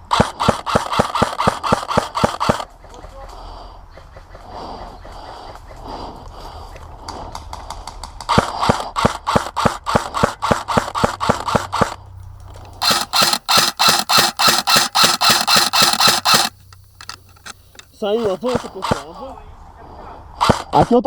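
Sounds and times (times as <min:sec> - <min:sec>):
airsoft rifles firing rapidly: 0:00.0 - 0:02.6, 0:12.7 - 0:19.2.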